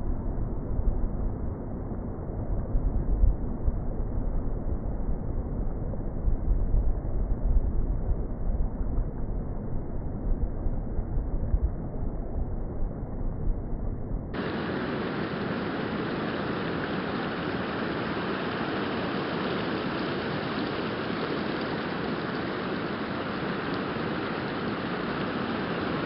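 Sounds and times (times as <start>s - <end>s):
steady rushing noise: 14.4s - 26.0s.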